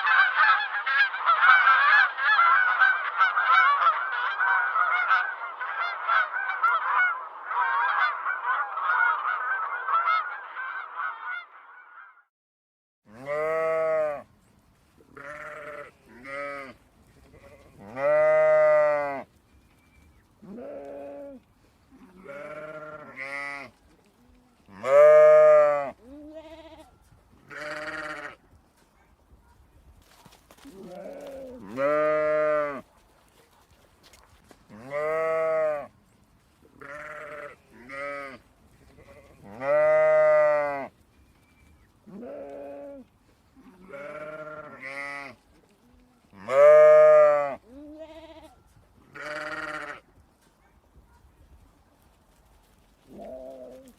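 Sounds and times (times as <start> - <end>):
flock of geese honking: 0.0 - 12.2
sheep and goats bleating: 13.1 - 14.3, 15.0 - 19.4, 20.4 - 28.5, 30.5 - 32.8, 34.7 - 36.0, 36.7 - 41.0, 42.0 - 45.6, 46.2 - 50.2.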